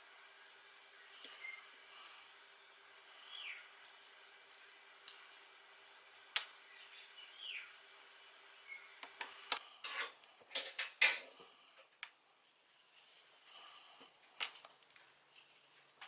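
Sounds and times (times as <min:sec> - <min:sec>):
tools handled on a workbench: 0:09.8 - 0:11.3.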